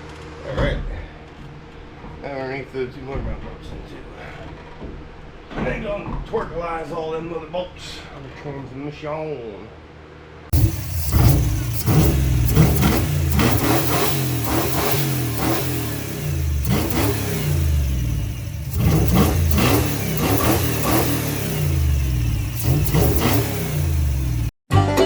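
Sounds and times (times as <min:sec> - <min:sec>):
engine revving: 0:10.5 - 0:24.6.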